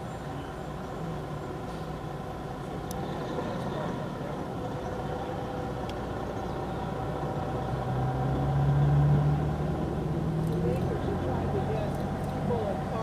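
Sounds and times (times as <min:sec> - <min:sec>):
low engine hum: 0:00.0 - 0:13.0
vehicle engines running: 0:00.0 - 0:13.0.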